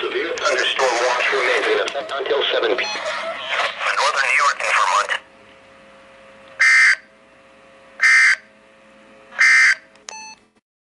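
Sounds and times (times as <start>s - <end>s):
faint receiver hum: 0.0s - 10.6s.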